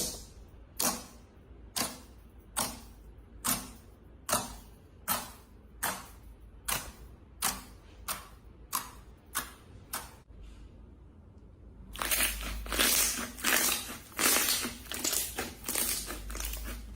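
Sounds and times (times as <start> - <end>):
slime crackling and crunching: 11.9 - 16.9.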